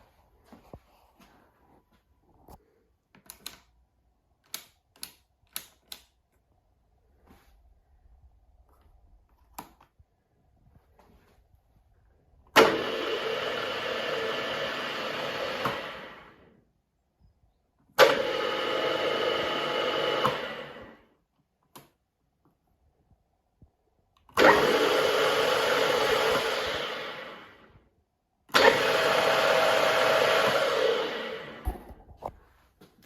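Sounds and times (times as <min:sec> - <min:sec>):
drill mill motor running: 0:12.6 - 0:16.4, 0:18.0 - 0:21.0, 0:24.4 - 0:27.7, 0:28.5 - 0:31.7.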